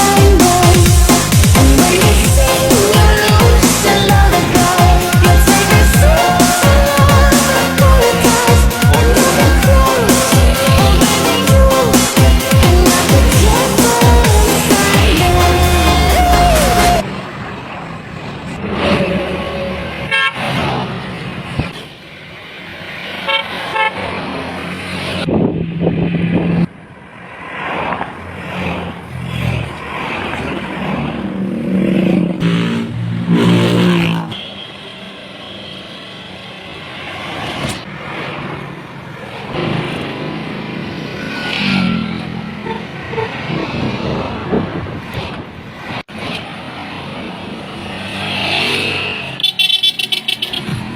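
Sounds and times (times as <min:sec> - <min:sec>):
road traffic: 0:00.0 - 0:50.9
vehicle horns honking: 0:20.0 - 0:20.6, 0:23.3 - 0:24.0, 0:33.7 - 0:36.6, 0:49.4 - 0:50.8.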